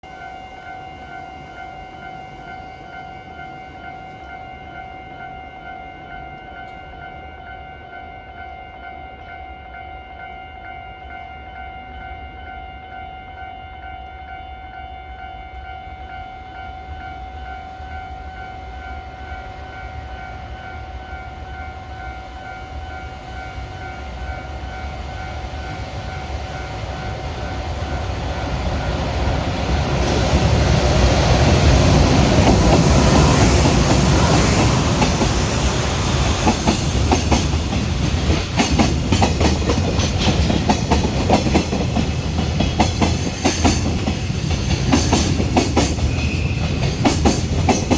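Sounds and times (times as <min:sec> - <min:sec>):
electric locomotive passing: 0:00.0 - 0:47.9
level crossing warning bell: 0:00.0 - 0:47.9
wagon wheels clattering on rails: 0:36.4 - 0:47.9.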